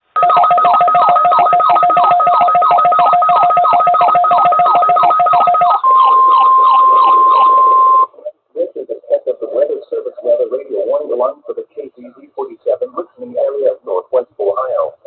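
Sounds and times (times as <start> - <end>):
steady high alarm tone: 0.2 - 8.2
pulsing two-pitch alert tone: 0.6 - 8.1.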